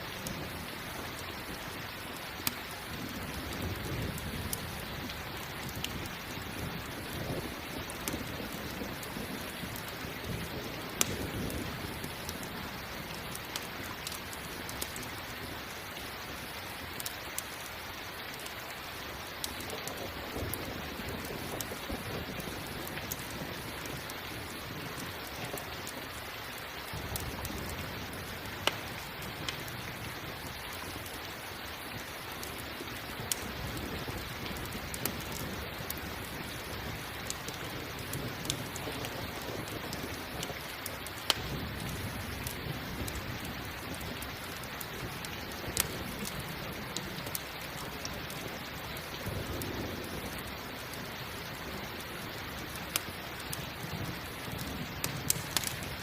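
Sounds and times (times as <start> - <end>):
campfire crackling: 0.0 - 56.0
steady rain falling: 0.0 - 56.0
low thunder rumbles: 2.7 - 13.4, 19.6 - 26.0, 41.3 - 47.3, 48.2 - 56.0.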